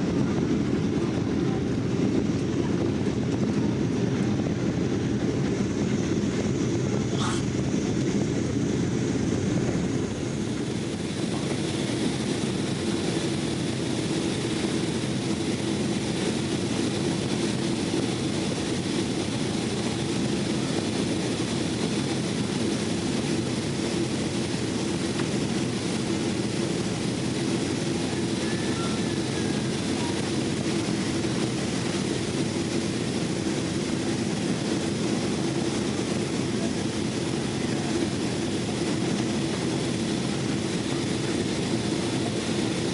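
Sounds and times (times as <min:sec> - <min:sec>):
airliner cabin engine and airflow rush: 0:00.0 - 0:42.9.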